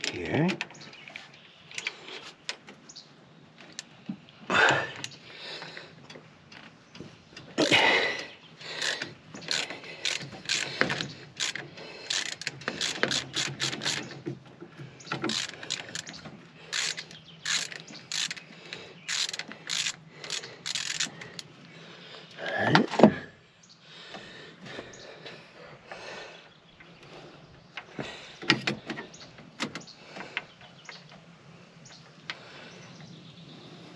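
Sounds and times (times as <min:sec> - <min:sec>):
ratchet wrench clicking: 0:08.8 - 0:14.1, 0:15.2 - 0:18.4, 0:19.1 - 0:21.4.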